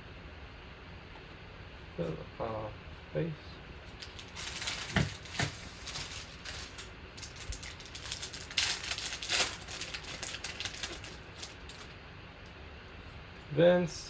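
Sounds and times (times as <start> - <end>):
cards clicking and rustling: 3.9 - 11.9.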